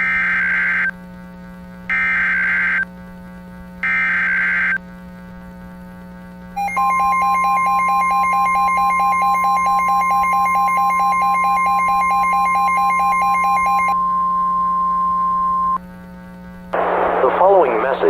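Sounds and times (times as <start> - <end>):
pulsing buzzy alarm tone: 1.9 - 2.9, 3.8 - 4.8, 6.6 - 15.8
low steady hum: 5.2 - 18.0
steady high alarm tone: 6.6 - 15.8.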